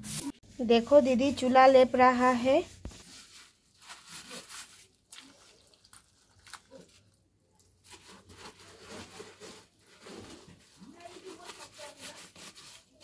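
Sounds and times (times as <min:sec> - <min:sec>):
hand smearing wet mud plaster: 0:10.9 - 0:13.0.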